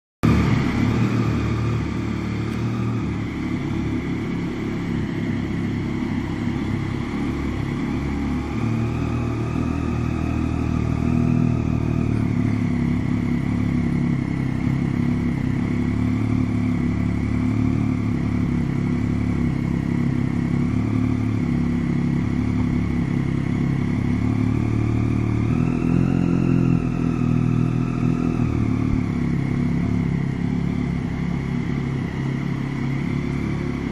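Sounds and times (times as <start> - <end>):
motorcycle engine idling: 0.2 - 33.9.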